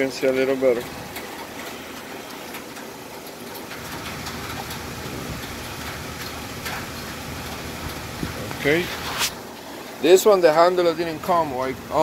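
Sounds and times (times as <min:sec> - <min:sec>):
vehicle engine rumble: 0:03.6 - 0:09.6.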